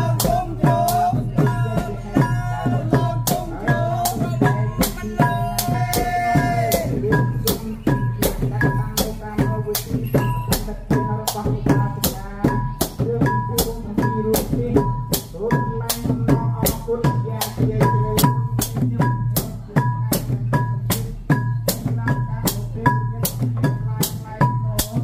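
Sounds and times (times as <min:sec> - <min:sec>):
drums beating fast rhythm: 0:00.0 - 0:25.0
short ringing tone: 0:09.9 - 0:11.2.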